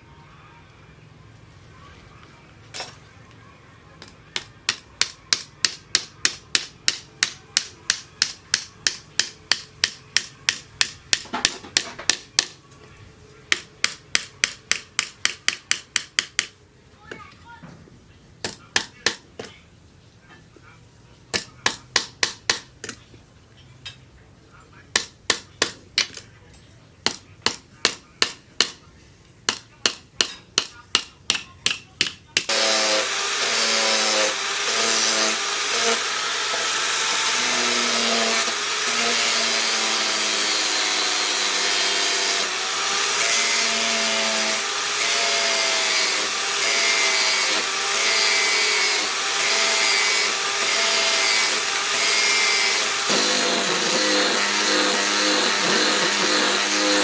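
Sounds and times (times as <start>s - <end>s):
power grinder on steel: 32.5s - 57.0s.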